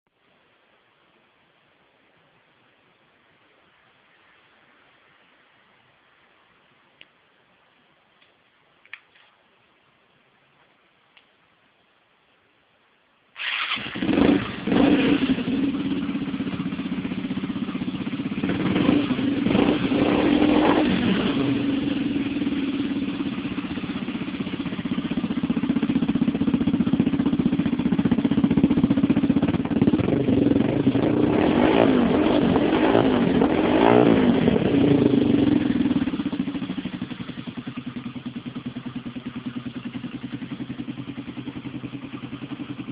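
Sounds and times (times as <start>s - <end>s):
motorcycle engine revving and idling: 13.4s - 42.9s.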